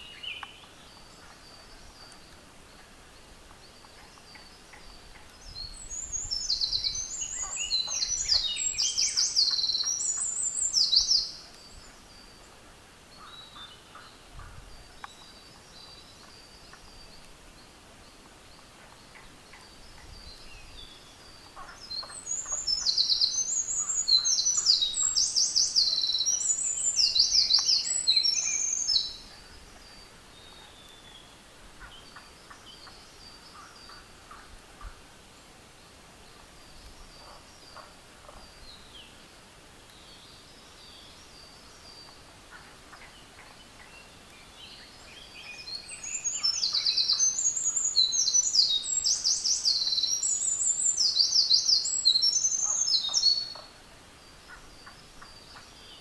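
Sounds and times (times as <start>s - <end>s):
wren song trills: 0.0s - 56.0s.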